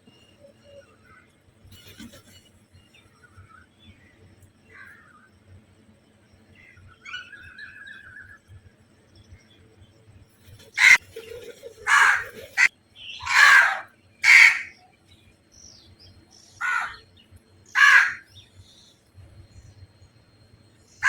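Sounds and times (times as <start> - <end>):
crows cawing: 10.8 - 11.0, 11.8 - 14.8, 16.6 - 17.0, 17.7 - 18.3.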